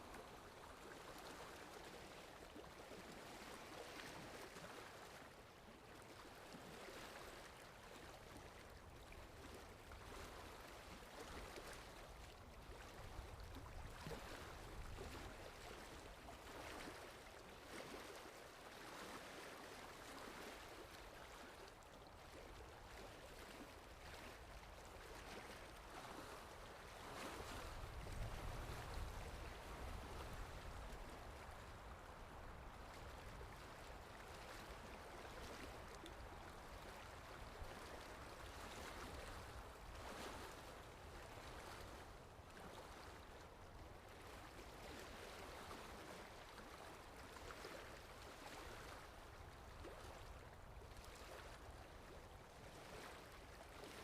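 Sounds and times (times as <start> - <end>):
sea waves washing on shore: 22.5 - 51.8.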